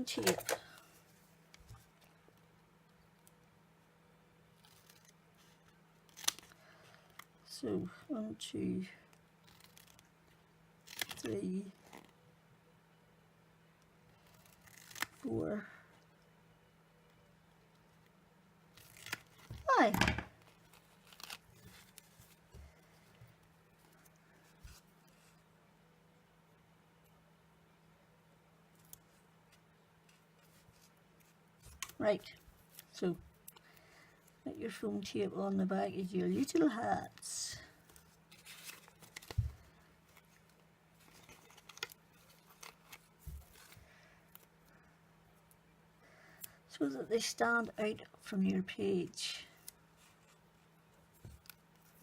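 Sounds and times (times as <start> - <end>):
low steady hum: 0.0 - 52.0
rustling of foam and card: 4.4 - 7.4, 9.0 - 12.2, 14.0 - 15.6, 18.7 - 25.5, 28.8 - 35.2, 35.8 - 44.7, 49.6 - 52.0.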